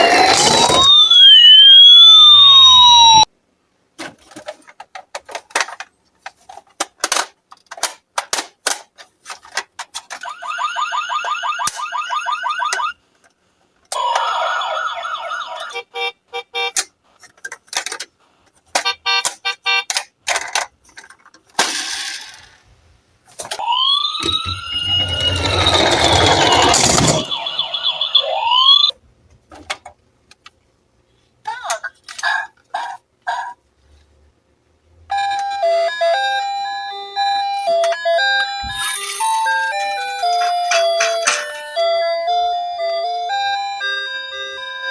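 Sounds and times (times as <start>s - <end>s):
emergency sirens wailing: 0.0s - 3.3s, 10.2s - 13.0s, 23.6s - 28.9s, 37.4s - 44.9s
fast repeating pulsing tones: 24.1s - 28.9s.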